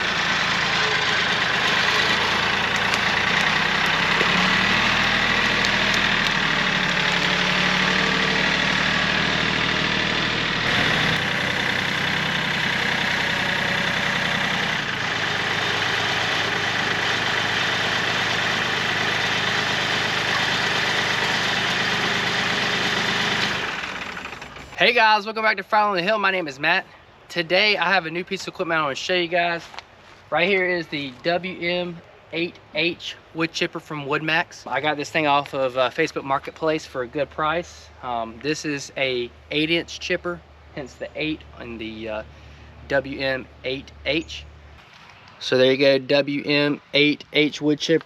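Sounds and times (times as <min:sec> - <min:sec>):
tractor engine running: 0:00.0 - 0:25.2.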